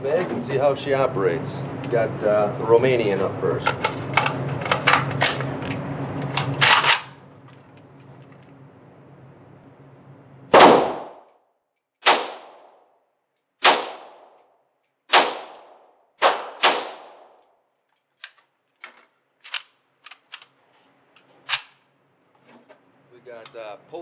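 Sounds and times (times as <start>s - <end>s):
rifle shots with echo: 10.5s - 11.3s, 12.0s - 12.7s, 13.6s - 14.4s, 15.1s - 17.4s.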